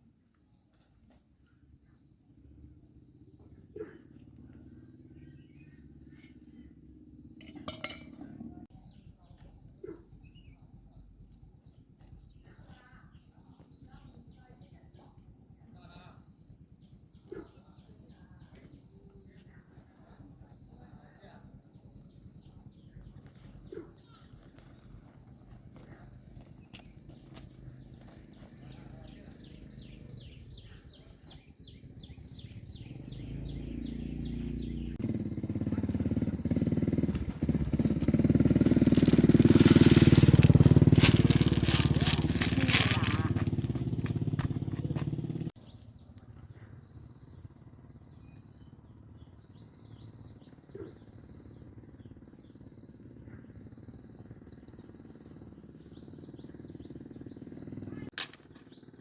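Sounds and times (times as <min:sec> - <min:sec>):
faint bird chirps: 0:00.0 - 0:35.1, 0:44.1 - 0:59.0
vehicle engine revving: 0:32.2 - 0:45.6.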